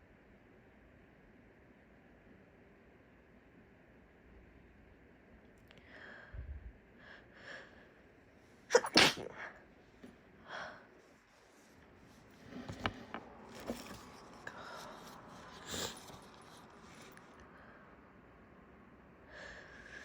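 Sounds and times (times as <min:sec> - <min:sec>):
woman sneezing: 0:08.7 - 0:09.6
soft catching breaths: 0:10.4 - 0:18.0.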